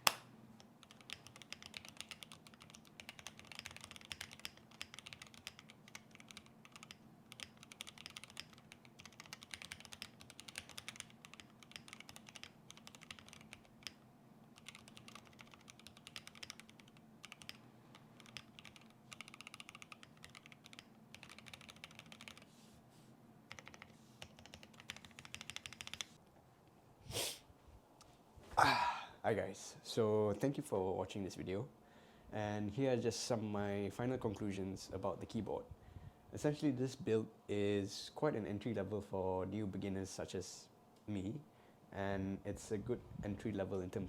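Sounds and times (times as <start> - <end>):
mechanical keyboard typing: 0.8 - 22.5, 23.5 - 26.2.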